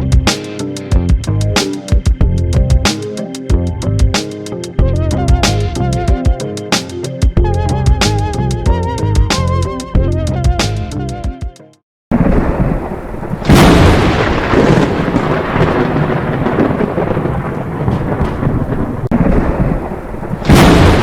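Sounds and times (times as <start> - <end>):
rain falling: 12.1 - 21.0
thunder clap rumbling: 12.1 - 21.0.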